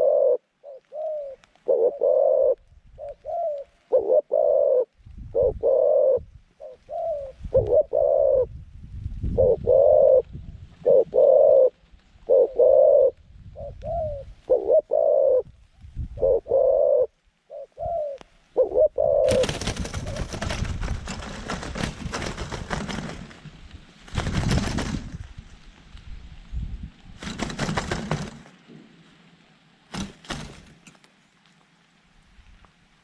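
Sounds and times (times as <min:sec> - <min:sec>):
dove cooing: 0:00.0 - 0:08.6, 0:09.3 - 0:15.5, 0:16.1 - 0:20.5
loud rustling: 0:19.3 - 0:25.3.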